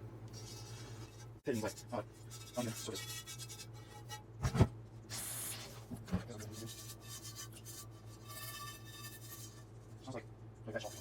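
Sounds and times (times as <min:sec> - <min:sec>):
steel wool scrubbing cast iron: 0:00.3 - 0:04.3, 0:05.5 - 0:10.1.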